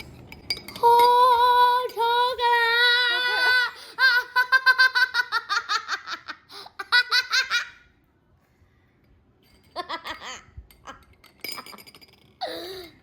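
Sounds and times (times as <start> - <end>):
girl laughing: 2.9 - 7.9, 9.7 - 11.0.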